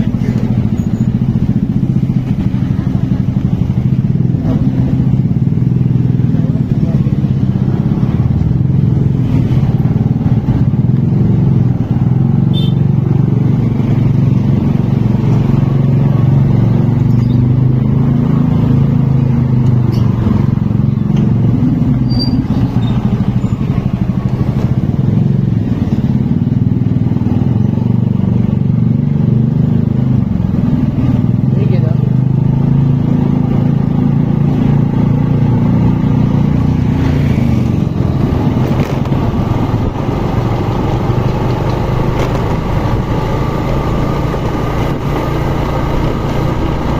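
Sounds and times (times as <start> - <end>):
small motorcycle engine running: 29.3 - 46.9.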